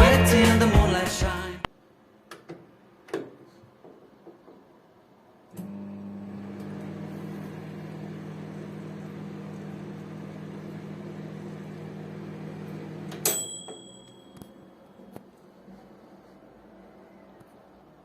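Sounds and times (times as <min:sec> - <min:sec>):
microwave oven humming: 0:05.5 - 0:15.0
microwave timer bell ding: 0:13.1 - 0:15.0.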